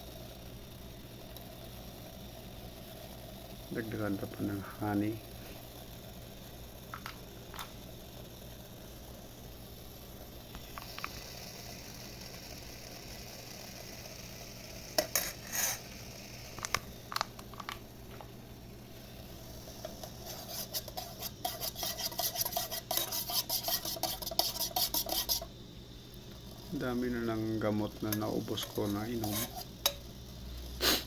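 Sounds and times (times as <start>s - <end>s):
rapid stirring strokes: 14.9s - 18.3s, 18.9s - 25.6s, 26.4s - 30.4s.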